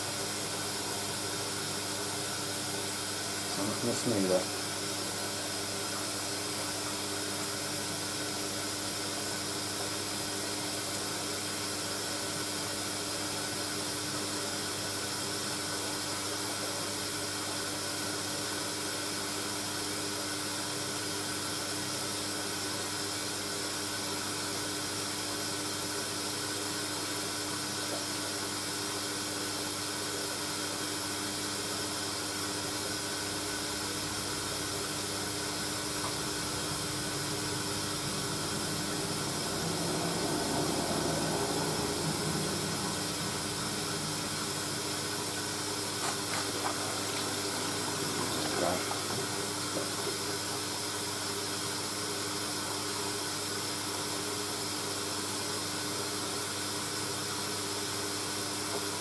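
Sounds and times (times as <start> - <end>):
washing machine hiss: 0.0 - 59.0
low hum: 34.0 - 50.3.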